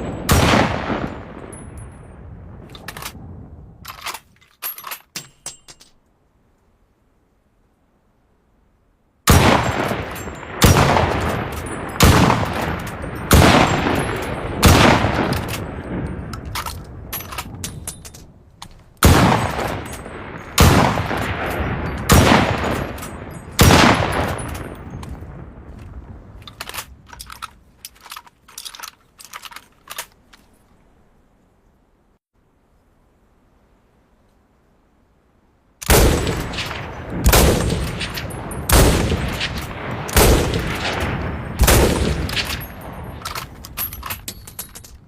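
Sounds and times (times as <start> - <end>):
rifle shots with echo: 0.0 - 1.6, 9.3 - 17.5, 19.0 - 24.9, 35.8 - 44.0.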